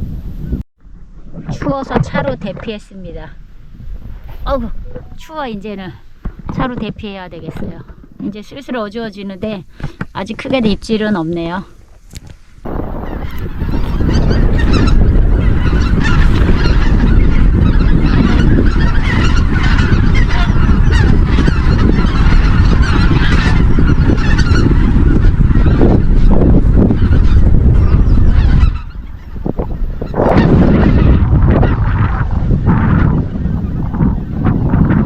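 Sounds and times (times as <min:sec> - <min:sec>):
wind rumble on microphone: 0:00.0 - 0:35.0
geese honking: 0:12.7 - 0:35.0.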